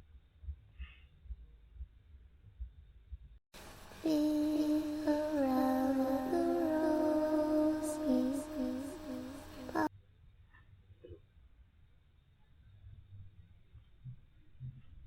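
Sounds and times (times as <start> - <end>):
wordless humming melody: 4.0 - 9.9.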